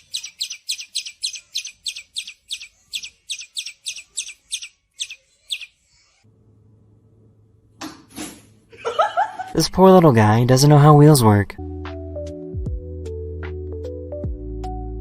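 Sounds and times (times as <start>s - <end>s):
bird chirping: 0.0s - 6.1s.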